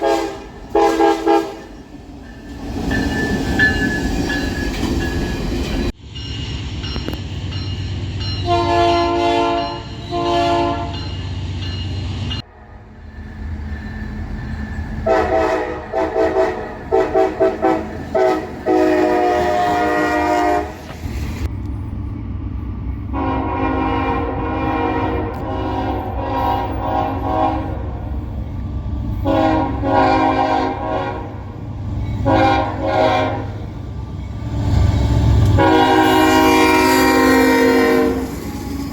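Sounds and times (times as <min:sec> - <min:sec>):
locomotive air horn blasts: 0:00.0 - 0:01.7, 0:08.4 - 0:11.0, 0:15.0 - 0:20.9, 0:23.1 - 0:28.0, 0:29.2 - 0:31.4, 0:32.2 - 0:33.6, 0:35.5 - 0:38.4
rumble of passing trains: 0:00.0 - 0:38.9.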